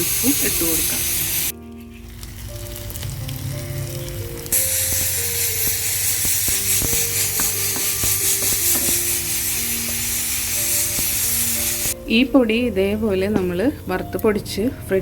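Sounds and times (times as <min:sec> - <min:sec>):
food sizzling in hot oil: 0:00.0 - 0:12.0
soft background music: 0:00.0 - 0:15.0.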